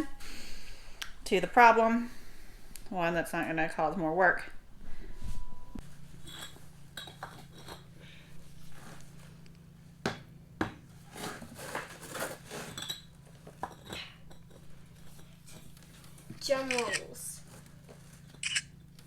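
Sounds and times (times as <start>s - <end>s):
faint low hum: 0.0s - 9.9s.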